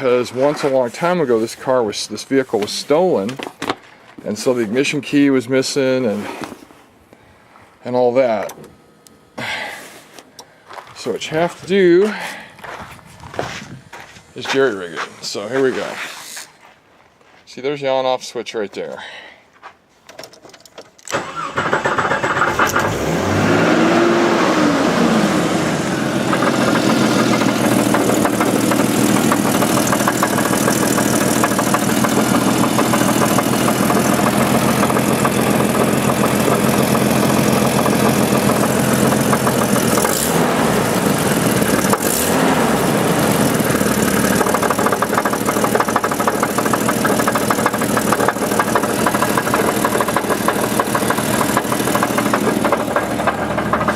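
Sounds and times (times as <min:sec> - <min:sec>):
car engine starting and idling: 0:21.1 - 0:53.9
engine knocking: 0:26.0 - 0:42.4, 0:43.0 - 0:53.9.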